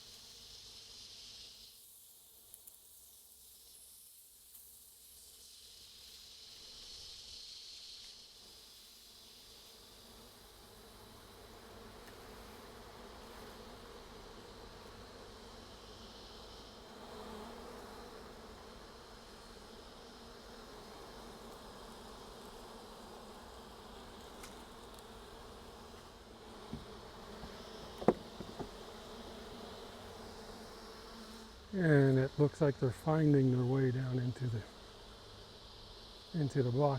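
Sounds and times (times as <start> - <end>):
bee swarm buzzing: 9.6 - 36.9.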